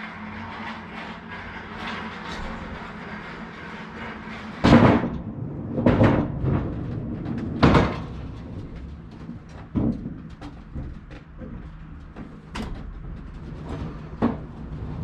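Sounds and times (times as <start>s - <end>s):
heavy knocks and clunks: 4.2s - 15.0s.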